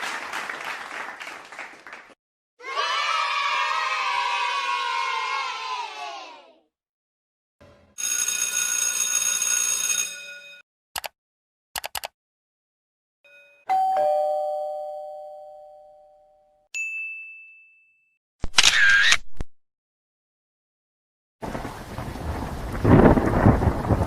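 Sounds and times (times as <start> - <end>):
two-tone doorbell: 8.0 - 10.6, 13.3 - 18.2
short clicks: 11.0 - 11.2, 11.8 - 12.1
short high ding: 13.3 - 18.2.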